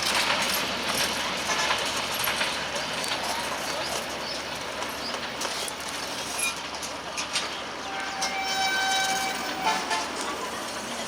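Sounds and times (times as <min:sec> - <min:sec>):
wheels clattering on rails: 0:00.0 - 0:11.0
train rushing past: 0:07.6 - 0:11.0.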